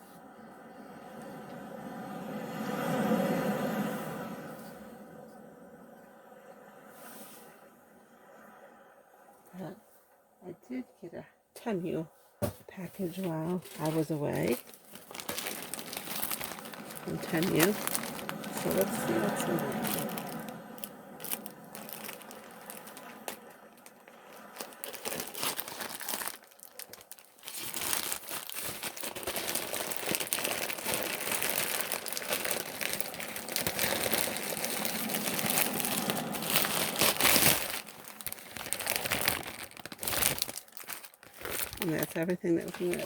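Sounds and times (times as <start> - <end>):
plastic packaging crinkling: 13.0 - 43.0.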